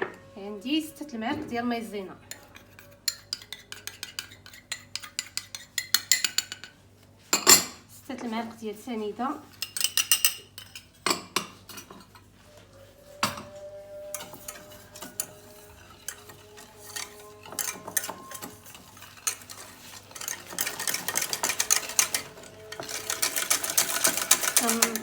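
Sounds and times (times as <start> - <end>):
utensils clinking on bowl: 2.2 - 7.8, 9.4 - 25.0
eggs being beaten in bowl: 2.3 - 6.7, 9.5 - 25.0.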